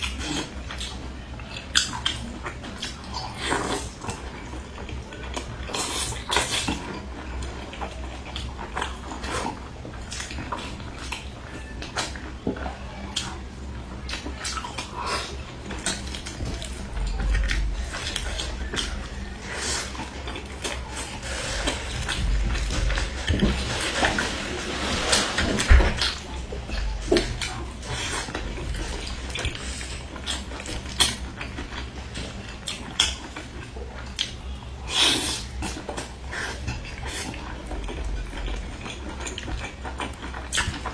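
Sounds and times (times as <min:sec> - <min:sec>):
wet chewing and mouth smacking: 0:14.0 - 0:21.1, 0:26.0 - 0:40.9.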